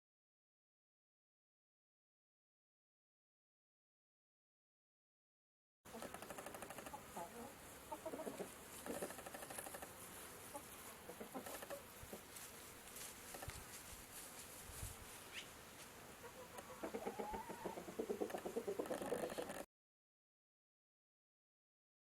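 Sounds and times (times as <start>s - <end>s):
chickens clucking: 5.9s - 12.5s, 16.2s - 19.6s.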